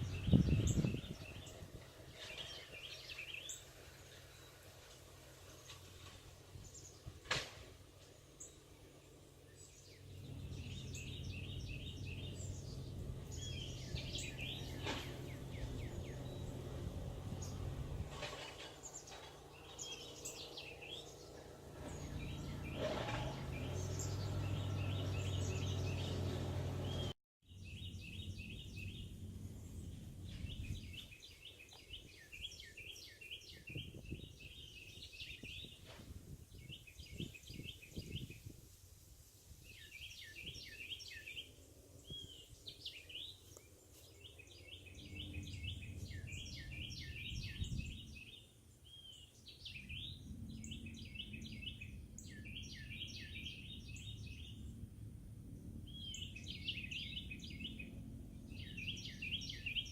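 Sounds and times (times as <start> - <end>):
low steady rumble: 0.0 - 7.2, 8.0 - 32.6, 49.6 - 59.9
songbirds chirping: 0.0 - 59.9.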